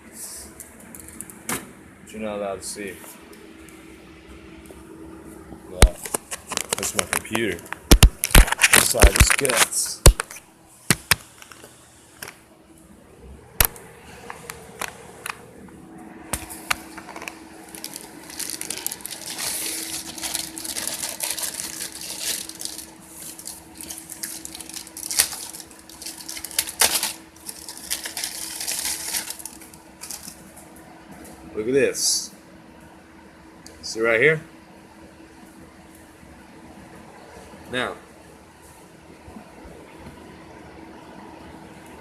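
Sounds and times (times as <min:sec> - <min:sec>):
steady low hum: 0:00.0 - 0:42.0.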